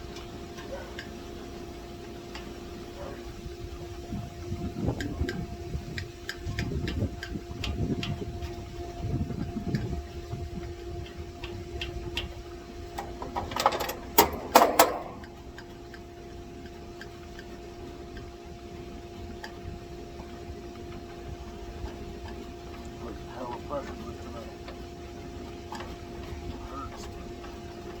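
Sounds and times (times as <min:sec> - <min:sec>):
steady hum: 0:00.0 - 0:28.0
louder clicks and knocks: 0:13.0 - 0:15.4.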